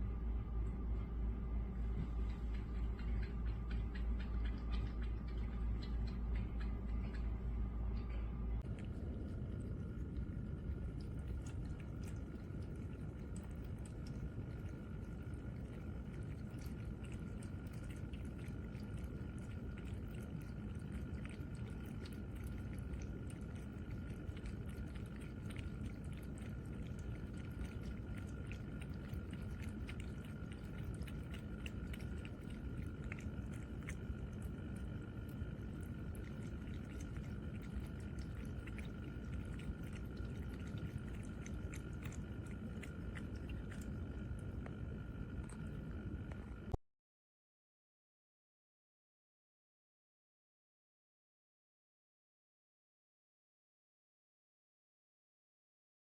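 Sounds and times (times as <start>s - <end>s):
pump whine: 0.0s - 46.8s
small clicks and drips: 2.0s - 46.8s
trickling water: 2.2s - 7.3s, 8.0s - 46.8s.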